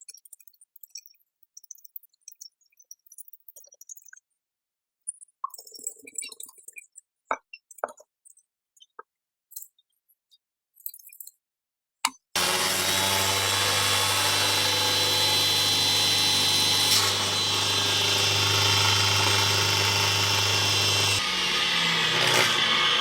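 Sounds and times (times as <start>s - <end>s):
power tool motor humming: 12.4s - 23.0s.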